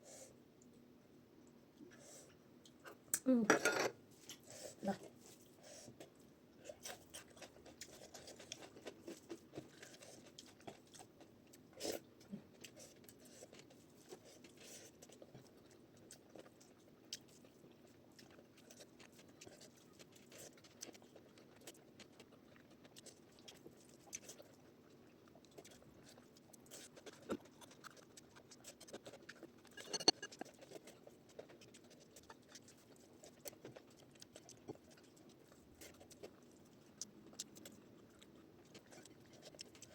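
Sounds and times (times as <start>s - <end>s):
faint chewing and mouth sounds: 0.0s - 3.4s, 4.0s - 39.9s.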